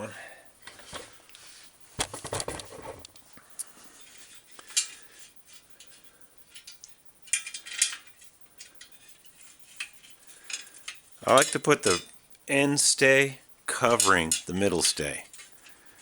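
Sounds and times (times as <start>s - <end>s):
metal hardware clinking and rattling: 2.0s - 12.2s, 13.8s - 16.0s.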